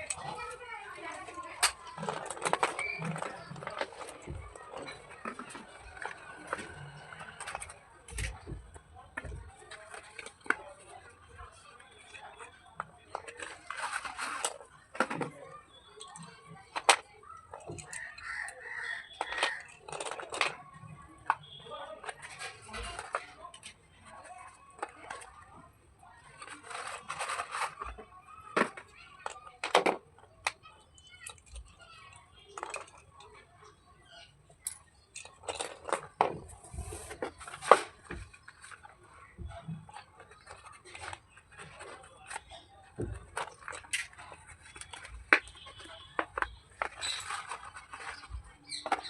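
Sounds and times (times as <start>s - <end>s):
slate pencils clicking together: 0.0s - 8.4s, 11.9s - 23.8s
pencils clicking and tapping: 0.0s - 49.0s.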